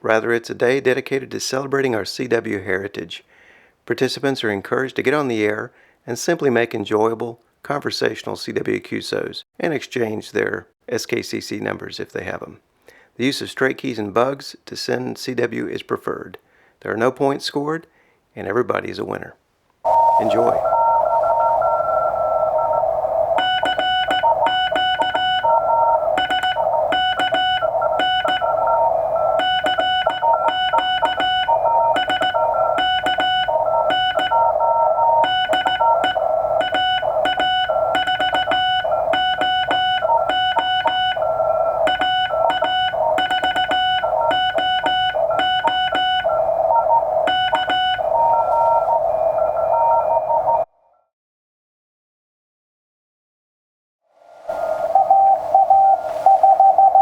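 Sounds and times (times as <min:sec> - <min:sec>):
morse code beeping tones: 0:19.9 - 0:50.6, 0:55.0 - 0:57.0
receiver hiss: 0:19.9 - 0:50.6, 0:54.2 - 0:57.0.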